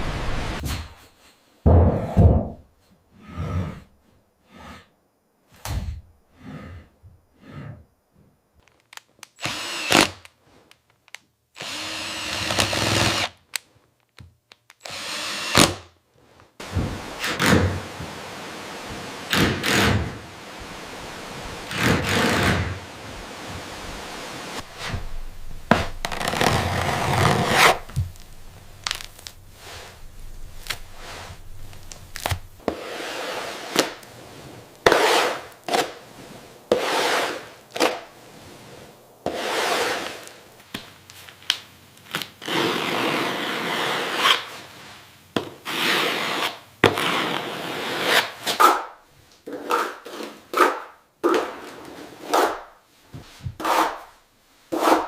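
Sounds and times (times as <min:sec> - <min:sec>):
hand tool scraping wood: 0:19.3 - 0:34.1, 0:34.8 - 0:36.0, 0:36.7 - 0:38.1, 0:39.2 - 0:40.4, 0:53.6 - 0:55.0.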